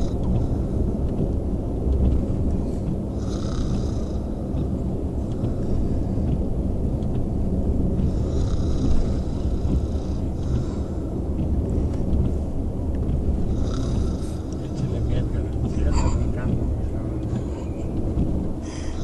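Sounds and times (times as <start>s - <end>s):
person snoring: 3.2s - 4.2s, 13.5s - 14.4s.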